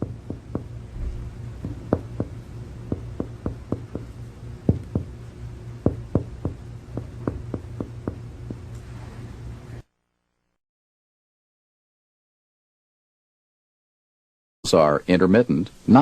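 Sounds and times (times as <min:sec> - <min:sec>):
steady low hum: 0:00.0 - 0:10.6
finger tapping on chest: 0:01.6 - 0:04.1, 0:04.7 - 0:05.1, 0:05.8 - 0:08.7.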